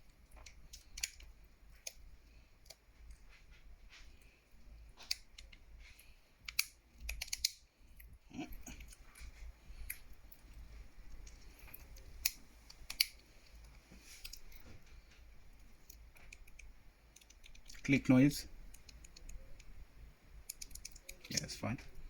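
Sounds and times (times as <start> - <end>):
smartphone parts clicking: 0.1 - 2.0, 6.4 - 8.1, 11.1 - 14.5, 15.6 - 17.8, 18.6 - 19.7, 20.4 - 21.6.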